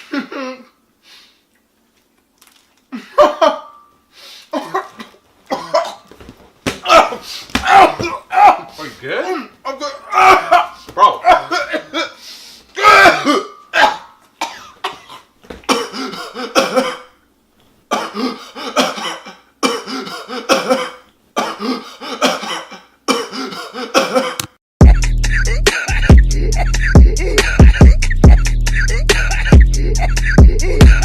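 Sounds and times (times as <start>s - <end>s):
person coughing: 2.9s - 3.7s, 4.5s - 6.1s, 10.5s - 12.2s, 12.8s - 17.2s, 17.9s - 24.6s, 25.5s - 26.1s
hip-hop beat: 24.8s - 31.0s.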